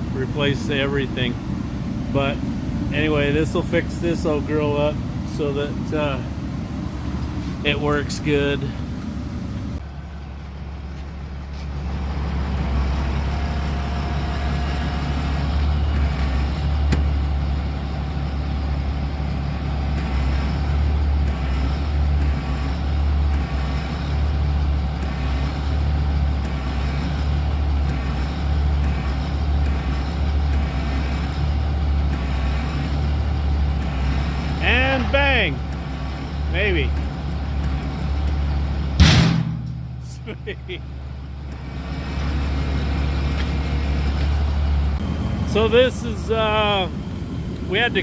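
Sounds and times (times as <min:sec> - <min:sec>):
machine humming and whining: 0:00.0 - 0:09.8, 0:41.5 - 0:48.0.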